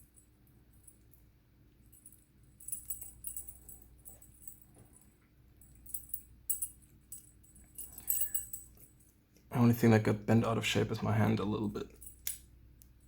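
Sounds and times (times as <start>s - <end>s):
metal padlock parts clinking: 5.7s - 9.0s, 11.9s - 12.6s.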